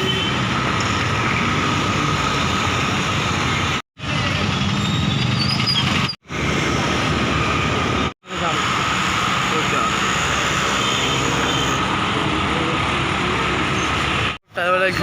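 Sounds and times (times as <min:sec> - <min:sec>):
road traffic rumble: 0:00.0 - 0:15.0
road hiss: 0:08.3 - 0:11.9.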